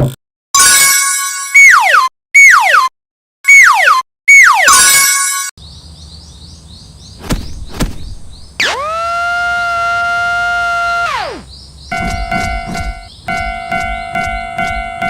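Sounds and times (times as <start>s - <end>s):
cartoon warning sound effects: 8.6s - 15.0s
siren-like sweeping tone: 8.6s - 15.0s
steady electronic alarm tone: 11.1s - 15.0s
faint repeating chirps: 11.9s - 15.0s.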